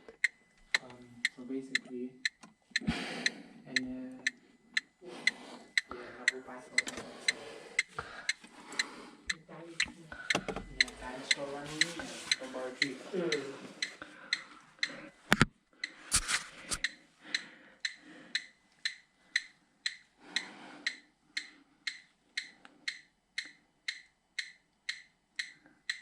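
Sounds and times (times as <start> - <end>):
gas detector ticking: 0.0 - 26.0.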